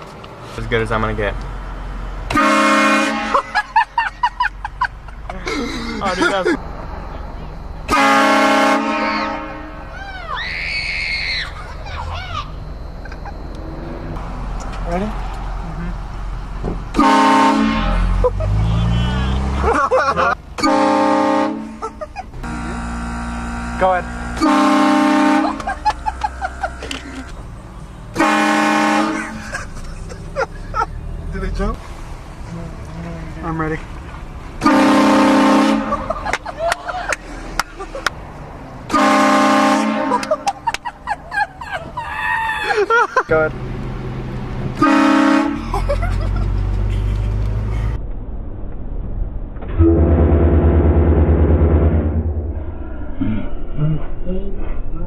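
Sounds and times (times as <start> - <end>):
train horn blasts: 2.3 - 3.5, 7.9 - 9.8, 16.9 - 18.2, 20.6 - 21.8, 22.4 - 25.7, 28.2 - 29.4, 34.6 - 36.1, 38.9 - 40.5, 44.8 - 45.6, 49.8 - 52.5.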